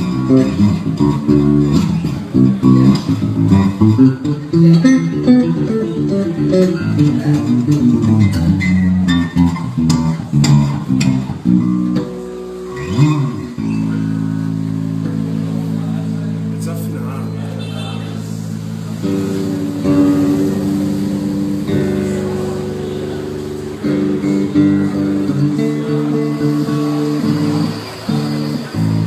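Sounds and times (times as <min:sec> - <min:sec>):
electric bass guitar: 0:00.0 - 0:29.0.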